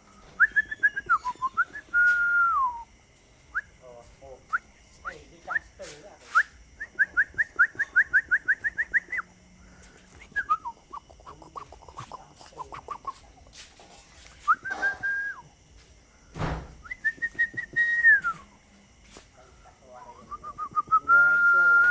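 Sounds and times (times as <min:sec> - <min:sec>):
person whistling chirps: 0:00.3 - 0:02.9, 0:06.3 - 0:09.3, 0:10.1 - 0:13.2, 0:14.4 - 0:15.5, 0:16.8 - 0:18.4, 0:20.2 - 0:21.9.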